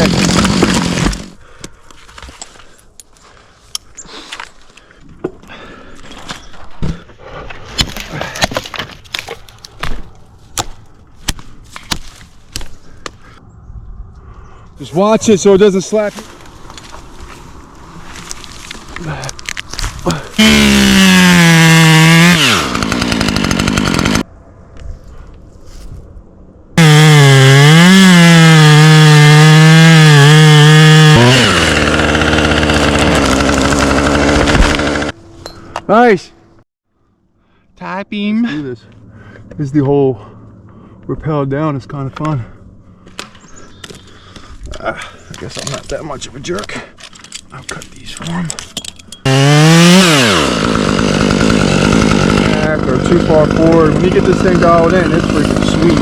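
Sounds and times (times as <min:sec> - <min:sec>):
chainsaw cutting wood: 0:00.0 - 0:01.4, 0:20.1 - 0:24.3, 0:26.8 - 0:35.2, 0:49.2 - 0:56.0.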